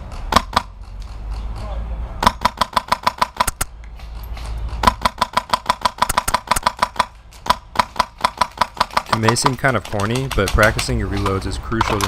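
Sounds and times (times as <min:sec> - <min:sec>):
airsoft rifle shots: 0:00.1 - 0:01.0, 0:01.6 - 0:03.8, 0:04.4 - 0:12.0.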